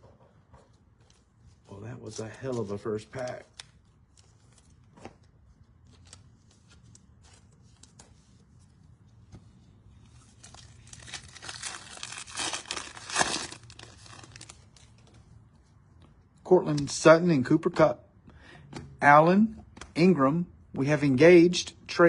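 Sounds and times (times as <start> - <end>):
foil wrapper tearing and crinkling: 10.5 - 14.6.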